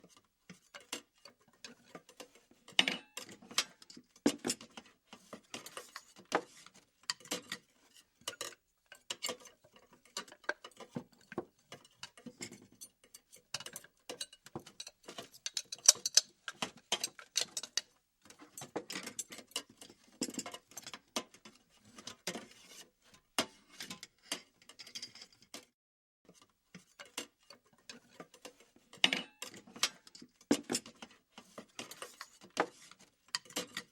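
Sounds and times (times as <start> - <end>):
metal utensils clinking: 13.6 - 16.3.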